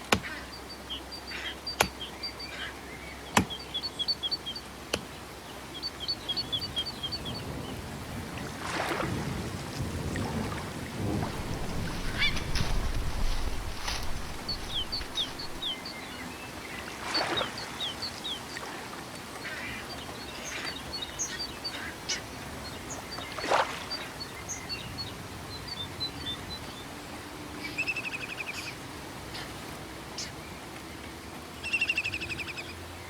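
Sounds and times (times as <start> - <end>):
birds chirping: 0.0 - 7.9, 11.0 - 29.6
harsh bird calls: 11.1 - 18.5
buzzy bird trill: 11.3 - 15.8.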